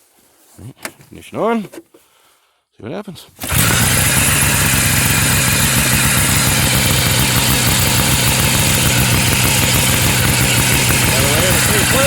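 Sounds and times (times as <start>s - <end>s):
snowmobile engine running: 3.4s - 12.0s.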